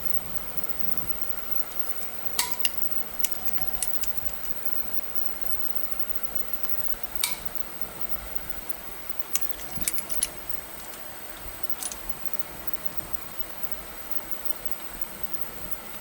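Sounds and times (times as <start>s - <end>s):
steady low hiss: 0.0s - 16.0s
metal tools clinking: 2.4s - 4.2s, 7.2s - 7.5s, 9.3s - 10.6s, 11.7s - 12.2s.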